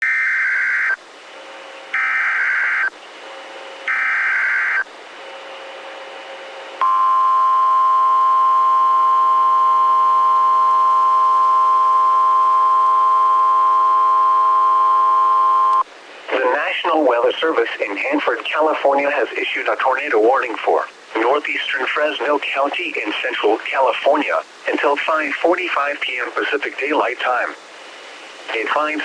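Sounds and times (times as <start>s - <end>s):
steady warning alarm tone: 0.0s - 1.0s, 1.9s - 2.9s, 3.8s - 4.9s, 6.8s - 15.8s
screechy digital data bursts: 2.0s - 2.9s, 3.9s - 4.8s
faint radio hiss: 9.2s - 29.0s.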